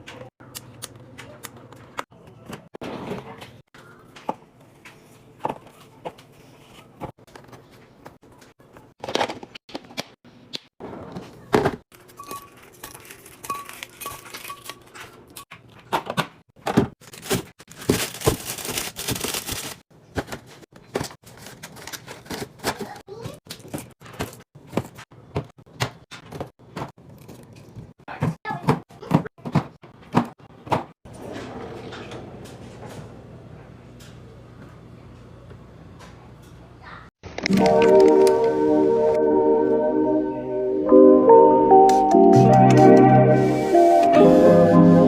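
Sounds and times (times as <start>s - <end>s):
packaging crinkling and tearing: 12.7s - 14.8s, 17.0s - 19.8s, 21.2s - 22.7s.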